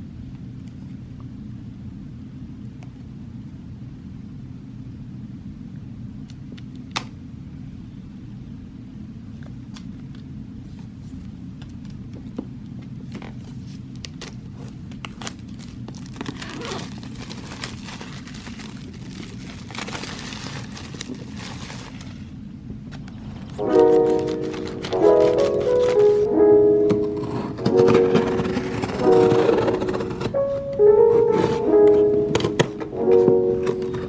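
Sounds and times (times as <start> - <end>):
packaging crinkling and tearing: 14.0 - 22.2, 23.0 - 26.3.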